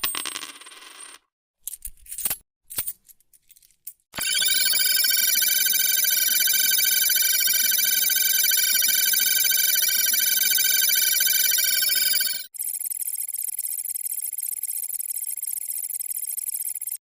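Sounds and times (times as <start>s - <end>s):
electronic held tones with sweeping tone: 4.2s - 12.5s.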